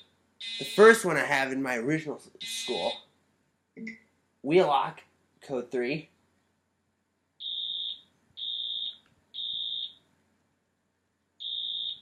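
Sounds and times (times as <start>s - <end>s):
fire alarm horn tones: 7.4s - 10.0s, 11.4s - 12.0s.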